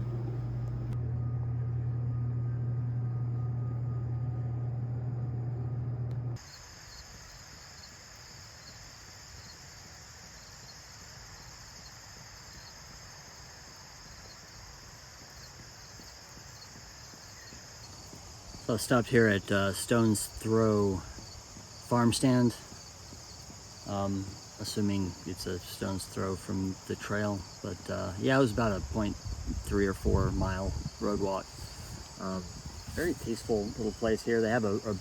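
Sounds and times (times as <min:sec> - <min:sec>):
steady low hum: 0:00.0 - 0:06.5, 0:13.6 - 0:35.0
crickets chirring: 0:06.4 - 0:35.0.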